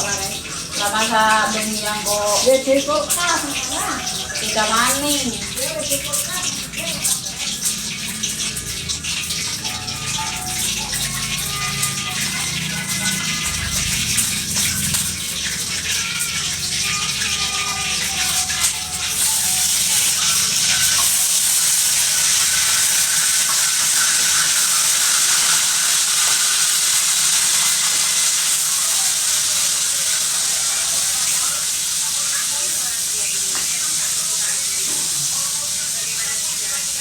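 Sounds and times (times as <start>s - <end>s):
running water splashing: 0.0s - 37.0s
background music: 9.5s - 21.4s.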